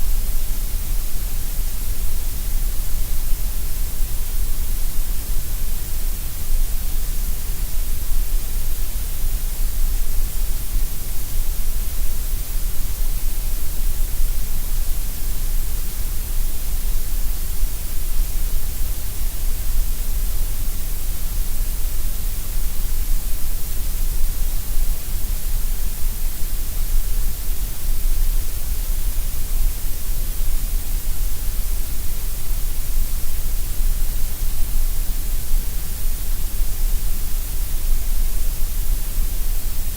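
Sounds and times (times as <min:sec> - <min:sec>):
steady gray noise hiss: 0:00.0 - 0:39.9.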